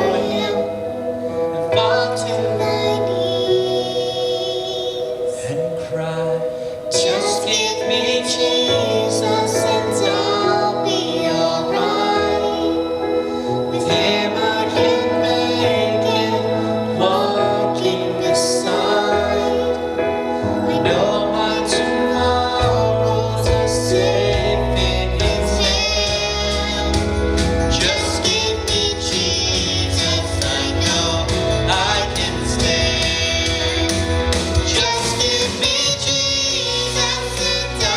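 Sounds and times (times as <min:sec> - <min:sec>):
gospel singing: 0:00.0 - 0:37.9
instrumental accompaniment with bass: 0:00.0 - 0:37.9
woman singing: 0:06.9 - 0:20.0.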